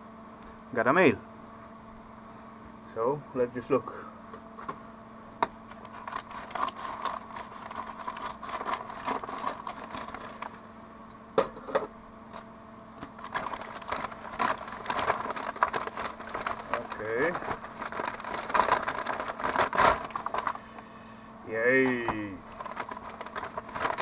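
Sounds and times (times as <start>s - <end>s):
faint steady hum: 0.0s - 24.0s
cardboard packaging tearing: 5.8s - 10.5s, 13.1s - 20.6s, 22.0s - 24.0s.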